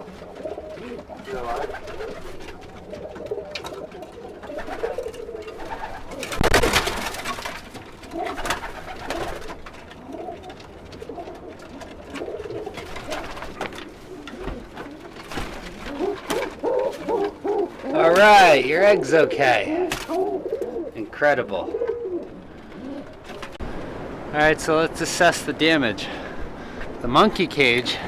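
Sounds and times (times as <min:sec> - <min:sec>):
loud rustling: 0:00.0 - 0:18.5
pigeons cooing: 0:00.0 - 0:23.6.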